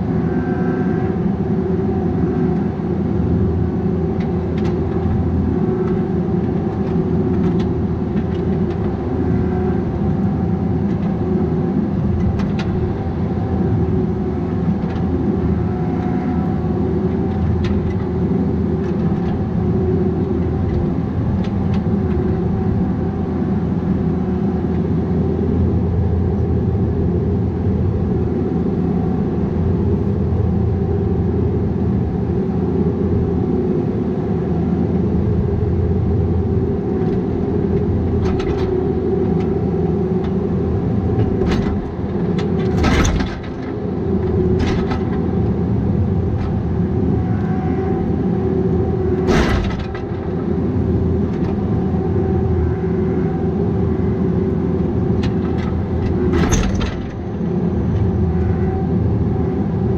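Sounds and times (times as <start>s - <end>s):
diesel engine running: 0.0s - 59.9s
machine knocks and clanks: 41.2s - 43.7s, 49.3s - 50.3s, 55.2s - 57.3s.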